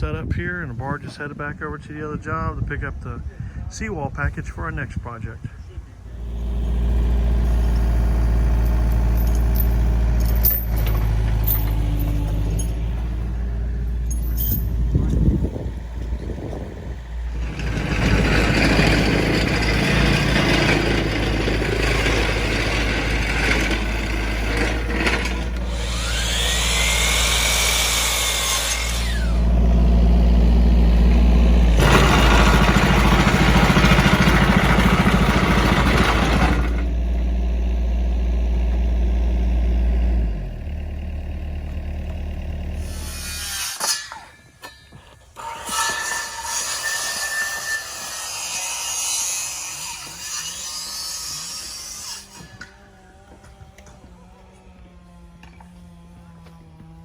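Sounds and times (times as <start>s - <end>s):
engine running steadily: 5.6s - 43.2s.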